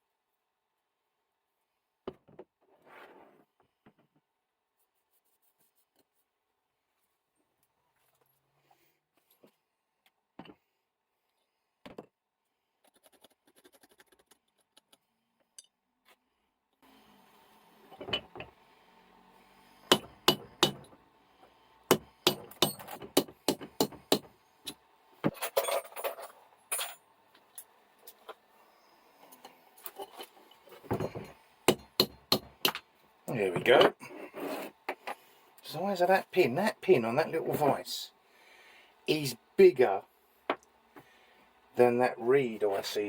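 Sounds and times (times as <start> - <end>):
metal tools clinking on vise: 24.7 - 27.0.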